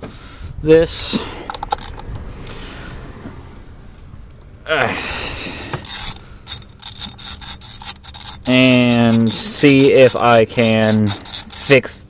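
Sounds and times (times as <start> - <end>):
rattle: 5.1 - 11.8
sharp mechanical clicks: 5.1 - 11.9.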